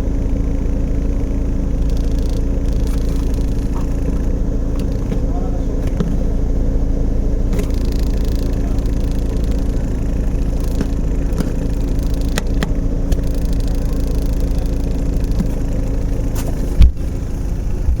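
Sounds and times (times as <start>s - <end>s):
buzzing rattle: 0.0s - 18.0s
car engine idling: 0.0s - 18.0s
loud thump: 16.4s - 17.0s.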